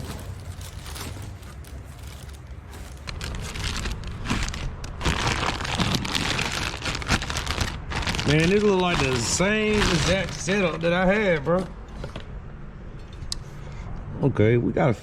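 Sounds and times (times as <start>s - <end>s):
packaging crinkling and rustling: 0.0s - 11.7s.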